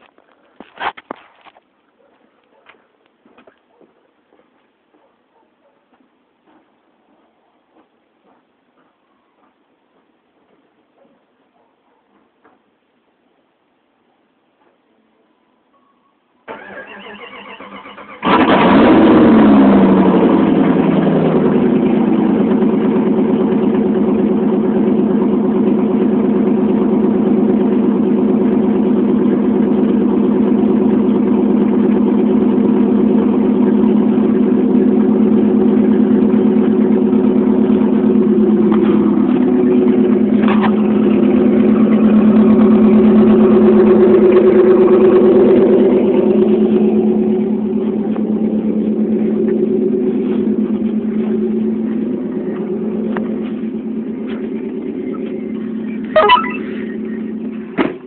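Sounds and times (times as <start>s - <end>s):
loud engine idling: 18.2s - 58.0s.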